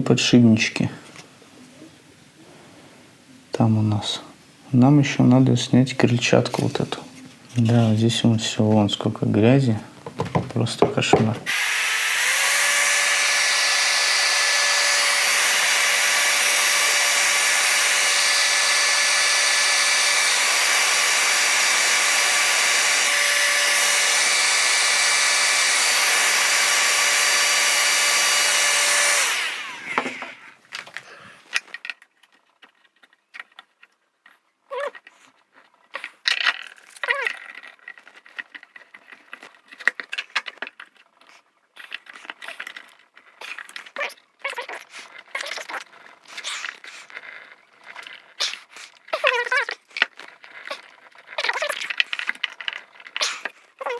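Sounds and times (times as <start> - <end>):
electric power tool whining: 11.5 - 30.9
clicks and knocks of handling parts: 30.0 - 44.0.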